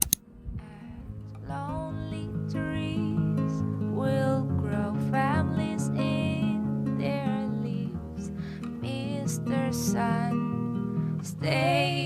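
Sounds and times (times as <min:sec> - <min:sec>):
short clicks: 0:00.0 - 0:00.2
gentle guitar song: 0:00.2 - 0:12.0.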